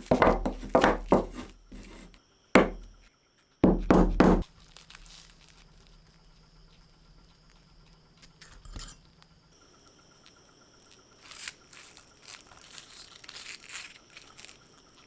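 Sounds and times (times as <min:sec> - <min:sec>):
knocks and rattling: 0:00.0 - 0:03.0, 0:03.6 - 0:04.4
faint steady hum: 0:00.0 - 0:15.0
sharp knock: 0:00.1 - 0:03.0, 0:03.6 - 0:04.4.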